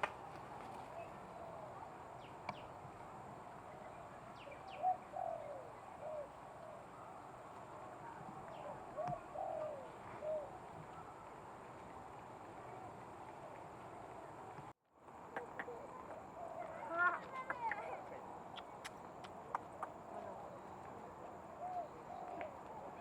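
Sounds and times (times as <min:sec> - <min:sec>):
birds cooing: 0:00.5 - 0:02.7, 0:03.7 - 0:07.3, 0:08.4 - 0:11.3, 0:15.3 - 0:18.0, 0:18.6 - 0:23.0.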